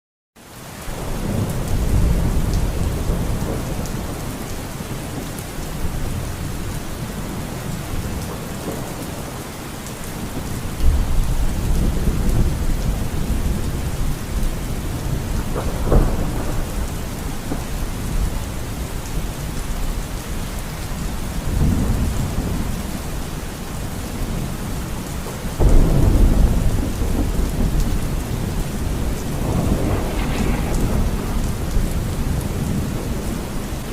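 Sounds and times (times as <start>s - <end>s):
steady rain falling: 0.4s - 33.9s
sharp crack: 29.7s - 32.2s.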